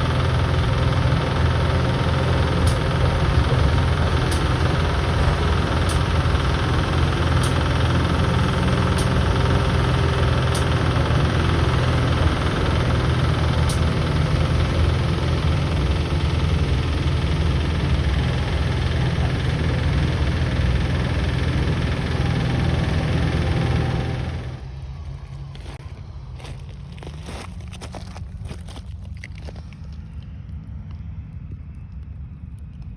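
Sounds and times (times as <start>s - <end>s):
steady low rumble: 0.0s - 32.9s.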